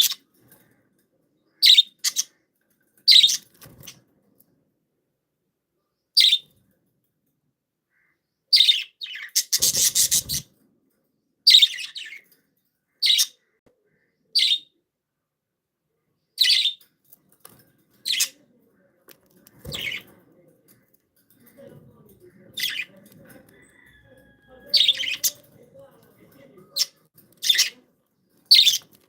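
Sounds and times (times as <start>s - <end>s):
budgerigars chirping: 1.6s - 2.3s, 3.1s - 3.5s, 6.2s - 6.4s, 8.6s - 10.4s, 11.5s - 12.2s, 13.0s - 13.4s, 24.4s - 25.4s, 28.5s - 28.9s.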